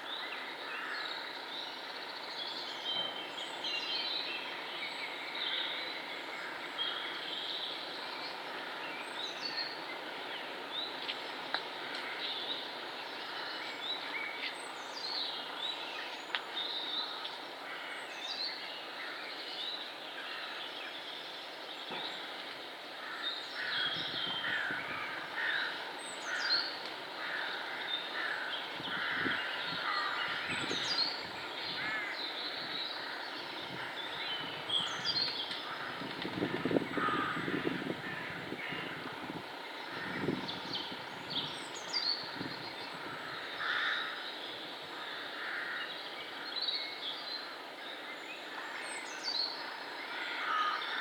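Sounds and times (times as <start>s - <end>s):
birds singing and calling: 23.0s - 51.0s.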